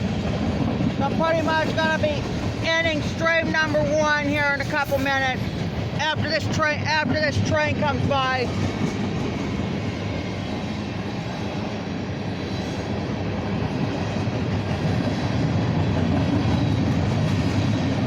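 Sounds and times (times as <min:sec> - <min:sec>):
freight train rumbling past: 0:00.0 - 0:18.0.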